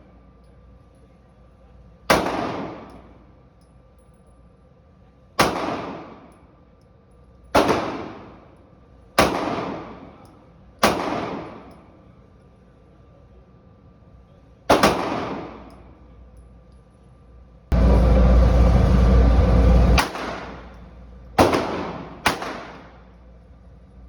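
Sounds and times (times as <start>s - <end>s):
gunshots with ringing echo: 2.1s - 3.0s, 5.4s - 6.3s, 7.6s - 8.4s, 9.2s - 10.2s, 10.8s - 11.7s, 14.7s - 15.7s, 20.0s - 20.8s, 21.4s - 23.0s.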